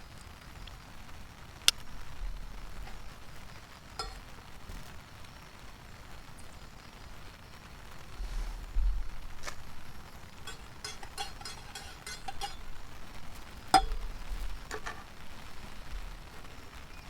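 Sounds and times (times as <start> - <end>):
handling rumble: 0.7 - 17.0
metal utensil clinking on cookware: 1.9 - 3.2, 4.0 - 4.8, 9.4 - 16.4.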